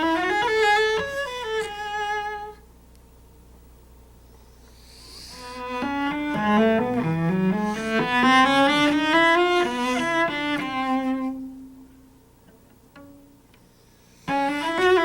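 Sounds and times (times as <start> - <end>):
cello playing a scale run: 0.0 - 2.6, 4.7 - 15.0.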